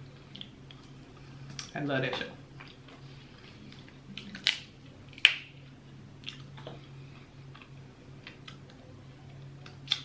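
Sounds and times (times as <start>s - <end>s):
low steady hum: 0.0s - 10.0s
chewing: 0.2s - 1.7s, 6.2s - 8.8s.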